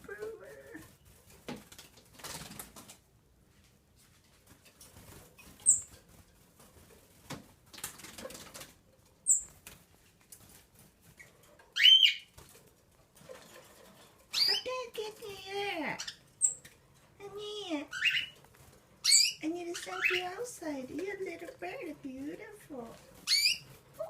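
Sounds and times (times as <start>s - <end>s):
bird wings fluttering: 0.9s - 3.0s
bird chirping: 5.4s - 6.0s, 9.2s - 9.6s, 11.2s - 12.3s, 14.3s - 14.8s, 16.0s - 16.8s, 17.9s - 18.4s, 19.0s - 20.4s, 23.2s - 24.0s.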